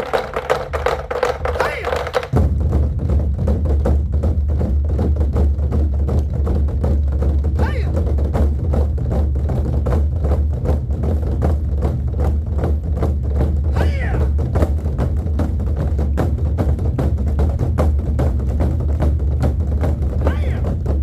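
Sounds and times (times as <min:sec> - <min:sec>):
drum ensemble beating: 0:00.0 - 0:21.0
person crying out: 0:13.8 - 0:14.3.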